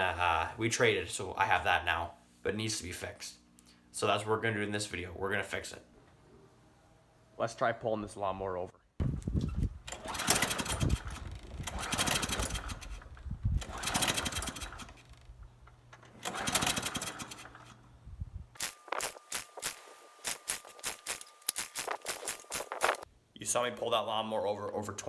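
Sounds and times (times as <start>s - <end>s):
recoil starter whirring: 9.1s - 23.1s
quick sharp clicks: 18.6s - 23.0s.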